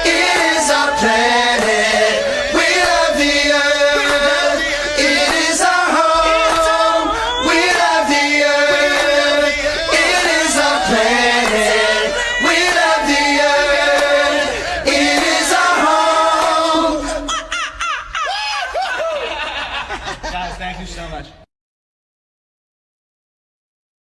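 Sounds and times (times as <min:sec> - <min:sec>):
choir singing over backing music: 0:00.0 - 0:17.5.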